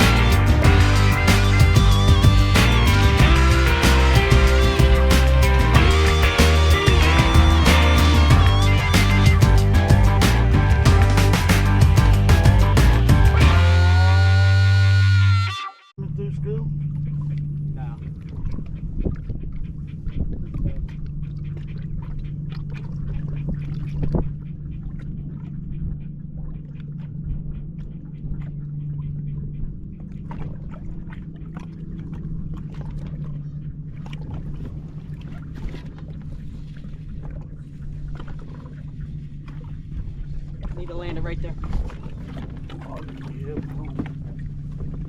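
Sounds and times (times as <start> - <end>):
boat motor humming: 0.0 - 45.0
water lapping against hull: 16.1 - 45.0.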